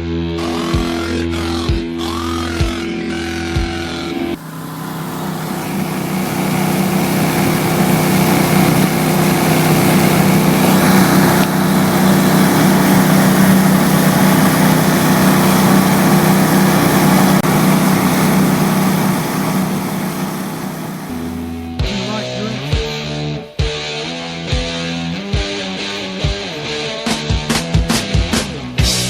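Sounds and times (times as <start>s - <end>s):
small engine running: 4.0s - 21.5s.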